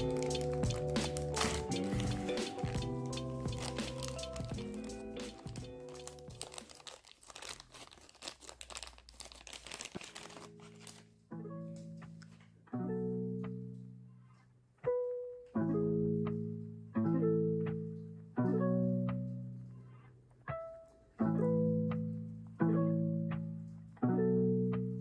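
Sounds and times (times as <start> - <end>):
plucked notes music: 0.0 - 7.6, 9.7 - 25.0
packaging crinkling: 0.0 - 11.1.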